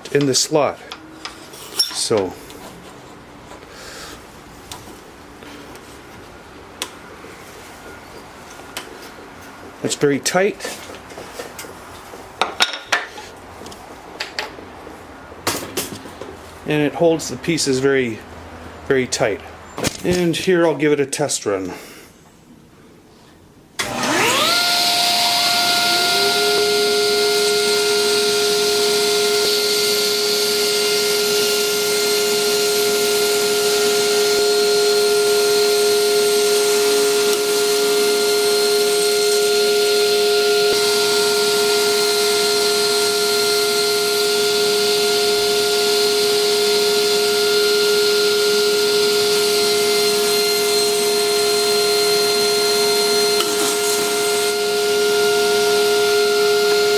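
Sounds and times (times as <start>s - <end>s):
lower motor tone: 23.8s - 56.9s
table saw motor whining: 23.8s - 56.9s.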